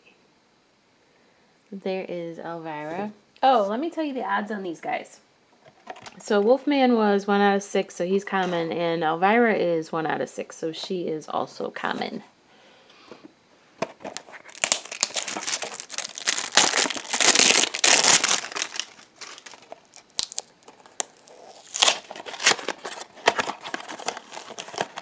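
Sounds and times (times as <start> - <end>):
packaging crinkling and tearing: 13.9 - 25.0.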